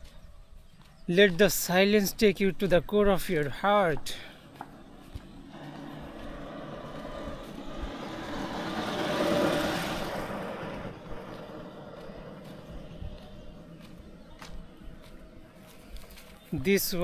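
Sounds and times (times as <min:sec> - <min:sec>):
motor vehicle passing by: 0:04.4 - 0:16.5.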